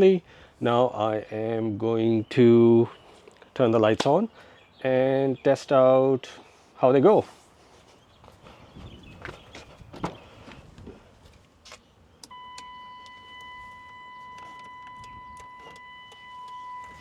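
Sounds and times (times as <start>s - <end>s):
car warning buzzer tone: 12.2s - 17.0s.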